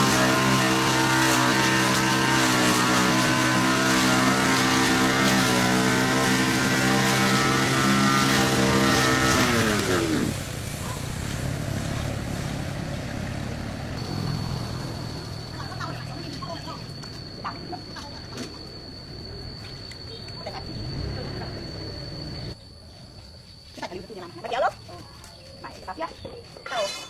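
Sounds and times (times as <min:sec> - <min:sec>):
engine running: 0:00.0 - 0:18.7.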